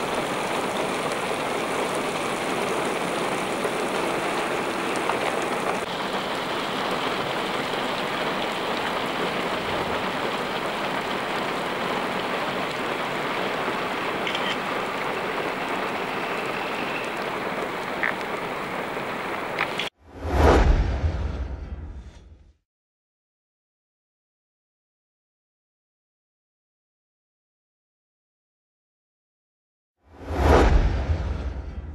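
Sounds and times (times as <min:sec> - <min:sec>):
heavy rain falling: 0:00.0 - 0:19.9
loud low boom: 0:20.2 - 0:22.4, 0:30.2 - 0:31.9.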